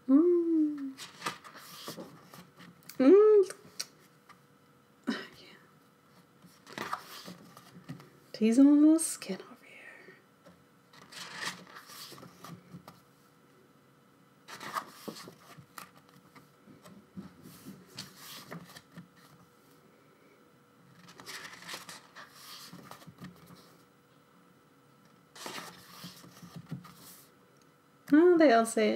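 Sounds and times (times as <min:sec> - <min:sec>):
paper pages rustling: 0:01.0 - 0:02.7, 0:06.4 - 0:08.1, 0:10.9 - 0:13.0, 0:14.5 - 0:16.5, 0:17.2 - 0:19.4, 0:20.9 - 0:23.8, 0:25.4 - 0:27.3.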